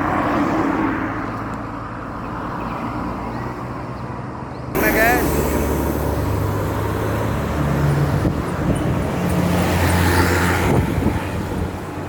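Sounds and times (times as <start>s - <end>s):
rush of noise: 4.8s - 8.6s
bus engine droning: 4.8s - 12.0s.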